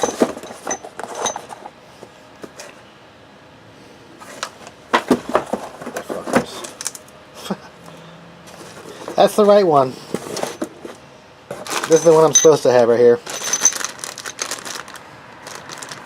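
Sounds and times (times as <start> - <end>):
metal parts clinking: 0.0 - 1.7, 11.5 - 14.9.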